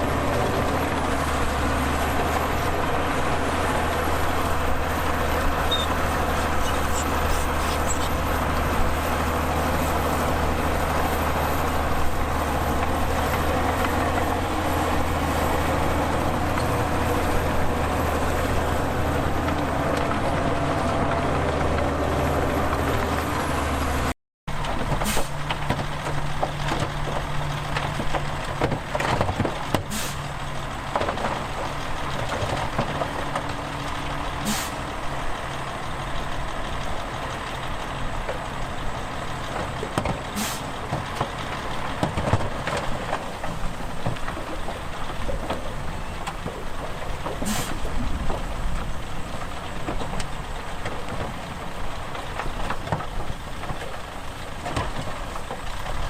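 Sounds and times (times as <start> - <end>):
diesel truck running: 0.0 - 56.0
heavy diesel machinery droning: 0.0 - 56.0
air brake hisses: 25.0 - 25.4, 29.9 - 30.2, 34.4 - 34.8, 40.4 - 40.7, 47.4 - 47.8.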